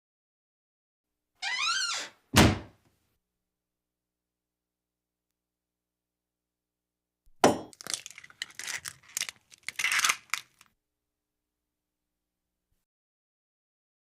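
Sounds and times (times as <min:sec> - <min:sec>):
egg shell cracking: 0:07.4 - 0:10.7
eggshell crackling and crunching: 0:07.7 - 0:10.7.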